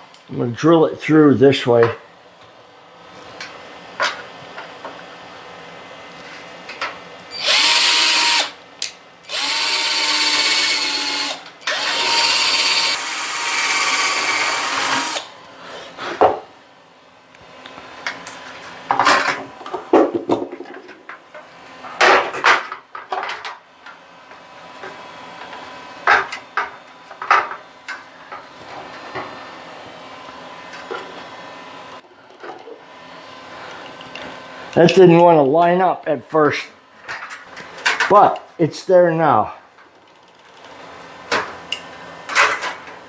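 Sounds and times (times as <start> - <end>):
electric drill whining: 7.3 - 8.6, 9.3 - 15.3.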